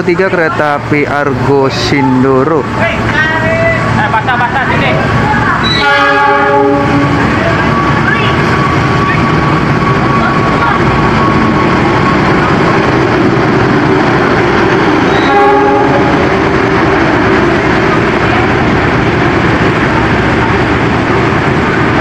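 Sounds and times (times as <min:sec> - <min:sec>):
train wheels rumbling: 0:00.0 - 0:22.0
locomotive horn blast: 0:05.6 - 0:07.4, 0:15.0 - 0:16.3.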